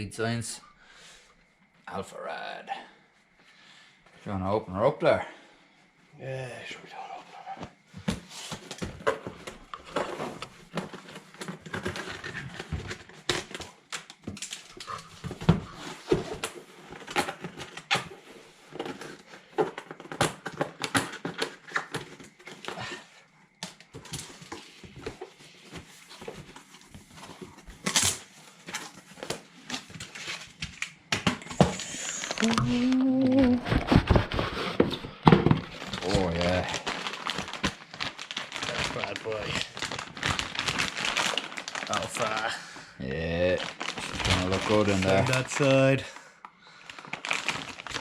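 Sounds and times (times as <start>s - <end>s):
cardboard box being unpacked: 8.2s - 22.8s, 23.9s - 30.6s, 31.4s - 42.6s, 43.3s - 46.0s, 47.0s - 48.0s.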